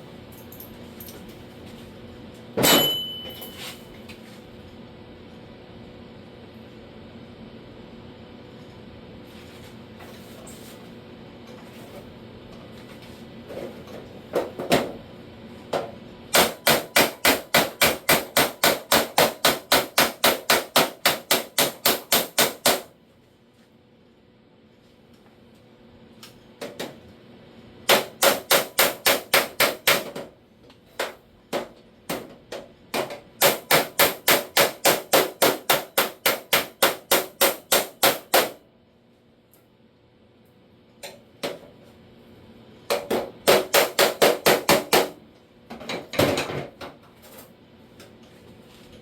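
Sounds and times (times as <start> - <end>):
hammer striking steel panel: 2.6 - 3.3, 16.4 - 22.9, 33.0 - 38.6, 42.9 - 45.2.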